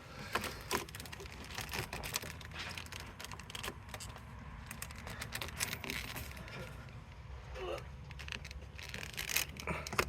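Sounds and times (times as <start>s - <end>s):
metal parts and tools clicking: 0.3s - 6.7s.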